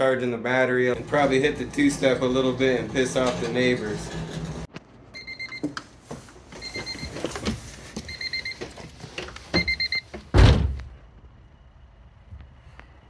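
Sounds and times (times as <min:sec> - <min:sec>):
car warning chime beeping: 0:09.6 - 0:10.1
car door shutting: 0:09.6 - 0:10.9.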